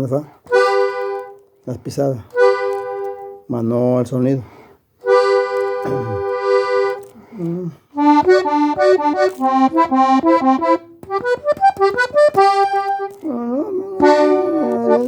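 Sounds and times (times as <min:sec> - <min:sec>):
accordion playing: 0:00.5 - 0:01.5, 0:02.2 - 0:03.6, 0:05.0 - 0:15.0
accordion button clicks: 0:08.0 - 0:13.2.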